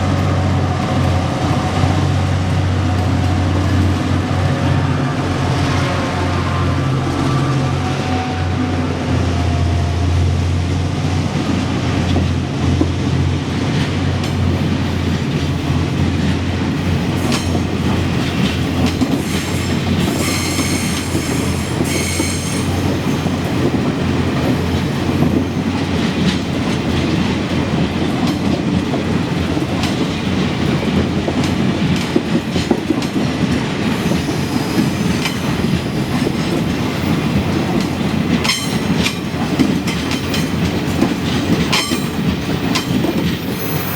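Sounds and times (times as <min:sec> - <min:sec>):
train wheels clattering over rails: 0:09.2 - 0:43.9
train wheel squeal: 0:18.8 - 0:23.5, 0:33.9 - 0:36.2, 0:38.4 - 0:39.2, 0:39.9 - 0:43.9.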